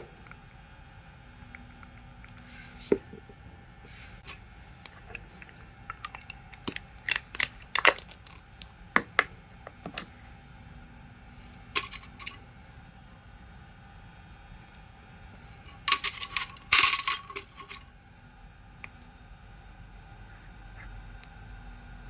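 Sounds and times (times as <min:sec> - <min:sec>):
low steady hum: 0:00.0 - 0:22.0
clicks of small parts and tools: 0:11.8 - 0:12.4, 0:15.7 - 0:17.8.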